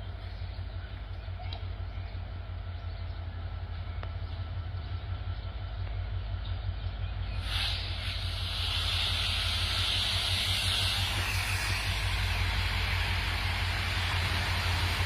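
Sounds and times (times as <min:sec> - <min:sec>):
train rumbling: 0:00.0 - 0:15.0
loud rushing hiss: 0:07.2 - 0:15.0.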